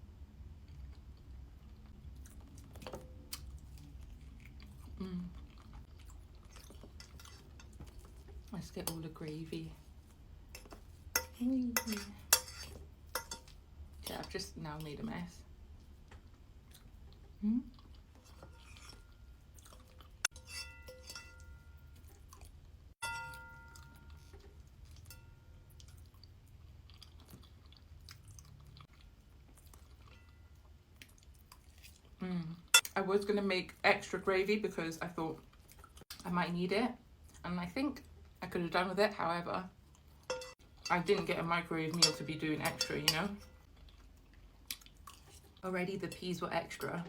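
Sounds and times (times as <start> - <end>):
chewing soft food: 0.4 - 8.5, 15.7 - 20.4, 21.9 - 32.9, 35.4 - 36.2, 43.6 - 45.6
cutlery clinking on a dish: 20.3 - 21.8, 23.0 - 24.3, 40.3 - 41.2, 42.0 - 43.4.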